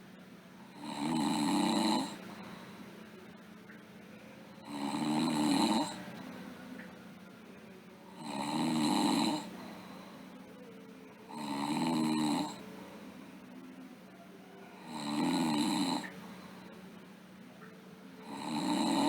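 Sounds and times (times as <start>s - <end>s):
girl snoring: 0.7s - 2.2s, 4.6s - 6.0s, 8.1s - 10.0s, 11.3s - 12.6s, 14.8s - 16.2s, 18.2s - 19.0s.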